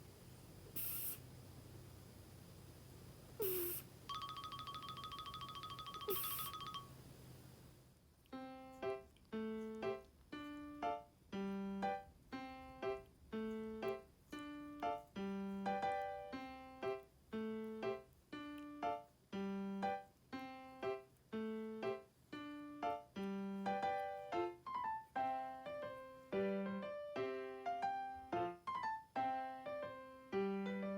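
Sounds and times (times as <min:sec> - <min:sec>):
piano melody: 0:03.4 - 0:07.0, 0:08.4 - 0:30.9
fast-pulsing chime: 0:03.6 - 0:07.0.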